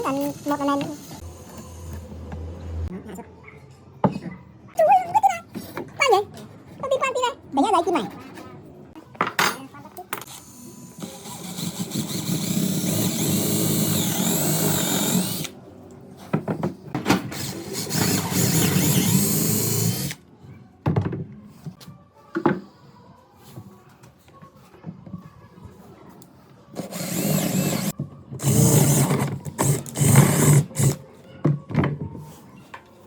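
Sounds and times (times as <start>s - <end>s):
power drill running: 10.4s - 15.5s, 17.4s - 20.2s, 26.8s - 31.0s.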